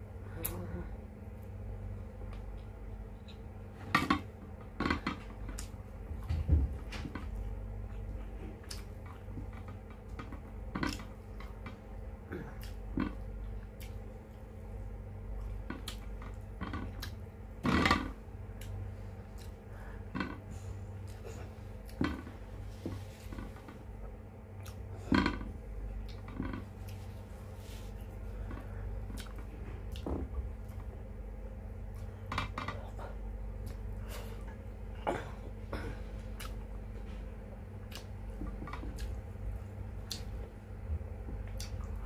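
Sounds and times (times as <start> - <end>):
low hum: 0.0 - 42.0
person chewing: 28.8 - 30.8, 36.2 - 36.9, 37.8 - 40.5.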